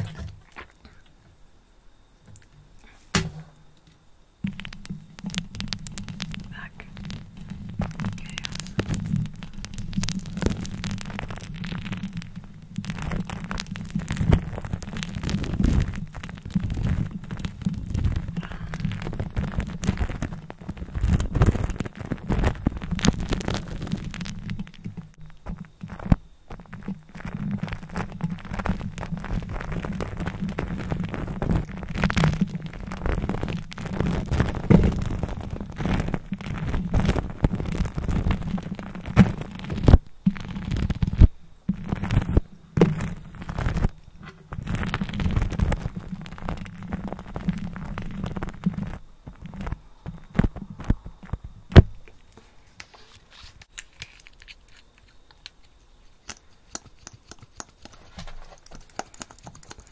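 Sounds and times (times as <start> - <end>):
lipstick scratching on microphone: 5.8 - 12.2, 56.3 - 59.9.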